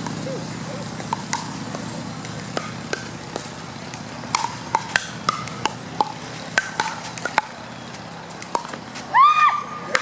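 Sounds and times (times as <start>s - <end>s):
ball bouncing on court: 0.0s - 0.3s, 0.9s - 9.1s
paddles striking plastic ball: 1.0s - 8.8s.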